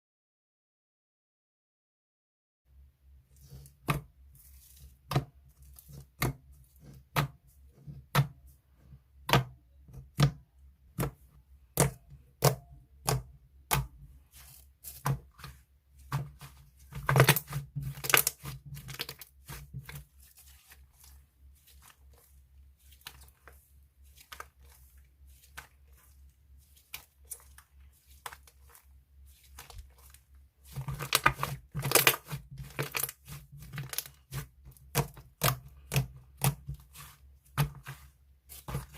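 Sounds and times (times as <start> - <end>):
slime popping and squishing: 16.1 - 20.1, 29.4 - 38.9.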